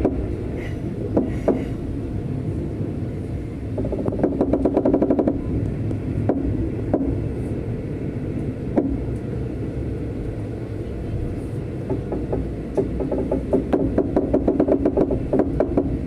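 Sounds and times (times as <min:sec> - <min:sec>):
sharp clicks of train wheels: 0:00.0 - 0:01.8, 0:03.7 - 0:07.3, 0:08.3 - 0:09.3, 0:11.8 - 0:16.0
train rumbling on track: 0:00.0 - 0:16.0.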